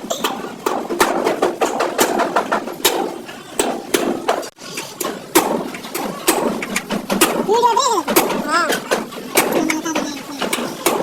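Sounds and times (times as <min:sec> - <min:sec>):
hammer strikes on sheet metal: 0:00.2 - 0:04.6, 0:05.3 - 0:11.0
voices talking: 0:07.4 - 0:11.0.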